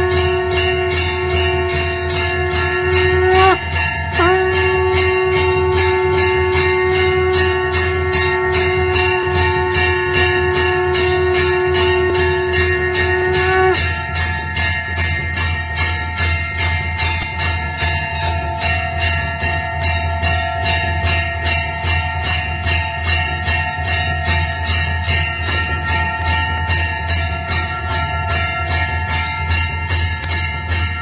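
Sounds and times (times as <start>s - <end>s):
low hum: 0.0s - 14.6s
temple bell ringing: 0.0s - 31.0s.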